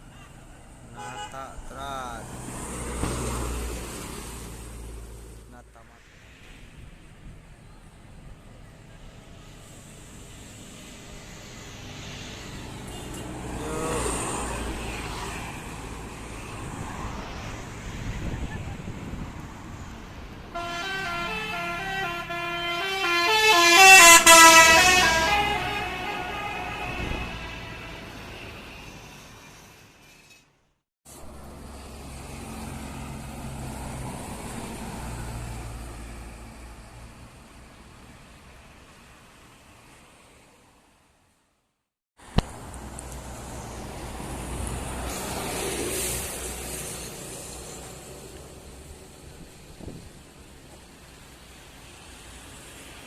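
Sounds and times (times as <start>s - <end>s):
bus driving past: 0.0s - 30.3s, 31.1s - 41.3s, 42.2s - 53.0s.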